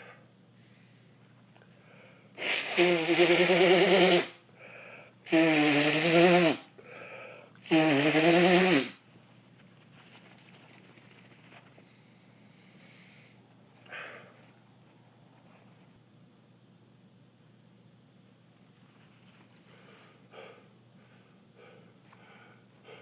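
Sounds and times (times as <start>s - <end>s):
man sneezing: 2.4s - 4.4s, 7.6s - 9.0s
gasping in-breaths: 6.8s - 7.6s.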